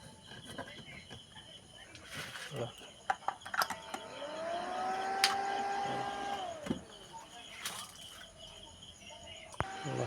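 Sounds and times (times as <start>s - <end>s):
small electric motor whining: 3.9s - 7.0s, 9.6s - 10.0s.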